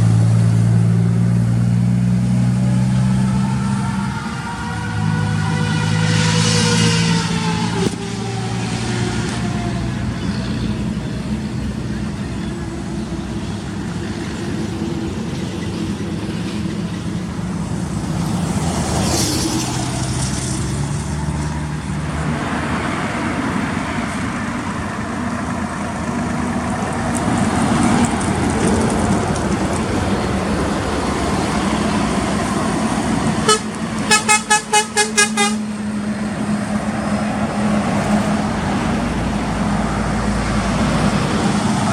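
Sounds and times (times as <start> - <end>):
diesel truck engine running: 0.0 - 41.9
horn short toots: 33.4 - 35.8.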